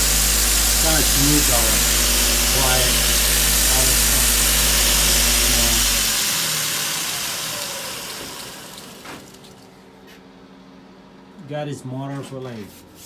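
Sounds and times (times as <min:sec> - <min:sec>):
belt grinder whirring: 0:00.0 - 0:09.7
low electric motor hum: 0:00.0 - 0:11.4.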